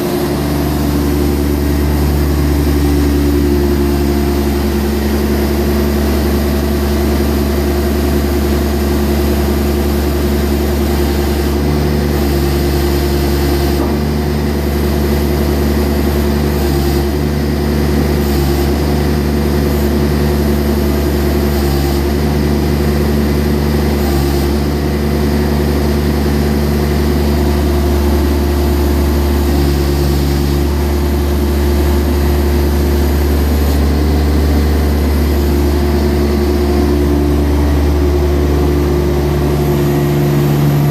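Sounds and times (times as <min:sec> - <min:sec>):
tractor diesel engine running: 0:00.0 - 0:40.9
low hum: 0:32.0 - 0:40.9.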